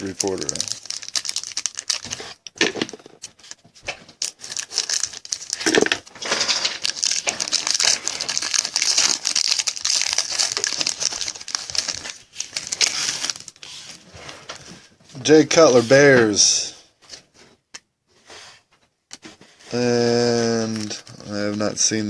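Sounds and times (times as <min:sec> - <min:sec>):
wrapper crinkling and tearing: 0:00.0 - 0:03.6, 0:04.2 - 0:14.0, 0:19.8 - 0:22.0.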